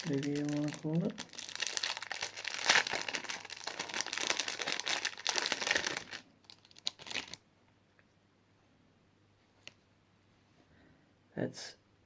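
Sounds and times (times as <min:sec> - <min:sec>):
packaging crinkling: 0:00.0 - 0:07.4.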